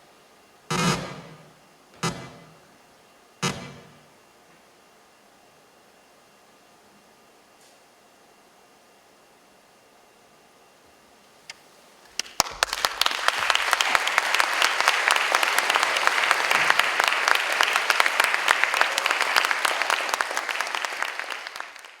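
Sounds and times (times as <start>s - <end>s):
audience applauding: 12.1s - 22.0s.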